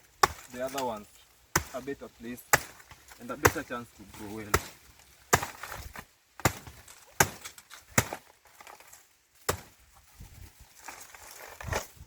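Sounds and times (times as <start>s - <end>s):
blade chopping banana plant: 0.2s - 0.8s, 1.5s - 1.9s, 2.5s - 8.3s, 9.4s - 9.8s.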